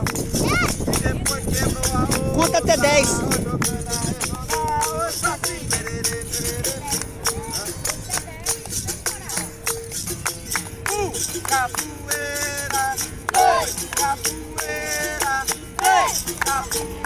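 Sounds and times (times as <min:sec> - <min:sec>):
rattling percussion strokes: 0:00.0 - 0:17.0.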